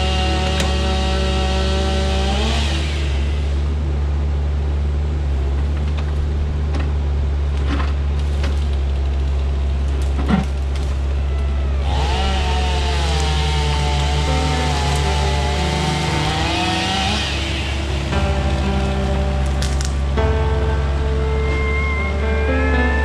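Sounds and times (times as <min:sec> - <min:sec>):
chainsaw revving: 0:00.0 - 0:03.7, 0:11.7 - 0:20.4
heavy machine engine droning: 0:00.0 - 0:23.0.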